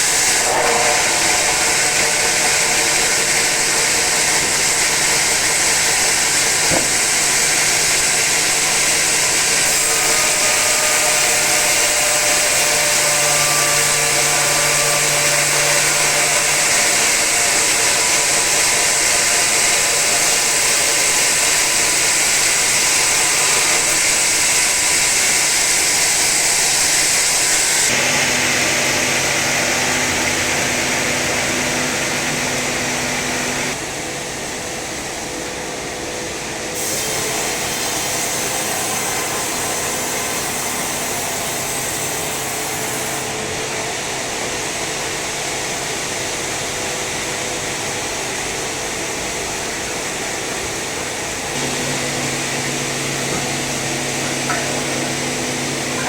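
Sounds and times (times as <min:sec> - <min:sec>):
saw blade cutting log: 0:00.0 - 0:33.8, 0:51.5 - 0:56.0
machine hum: 0:50.9 - 0:56.0.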